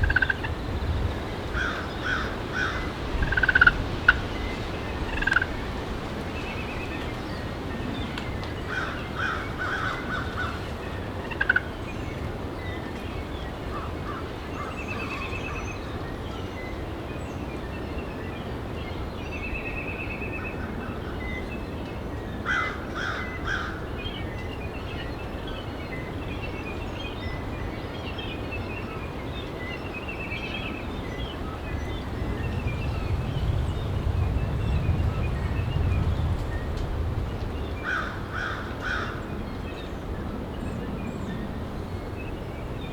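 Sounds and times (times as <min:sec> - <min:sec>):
wind buffeting microphone: 0:00.0 - 0:14.6, 0:26.1 - 0:42.9.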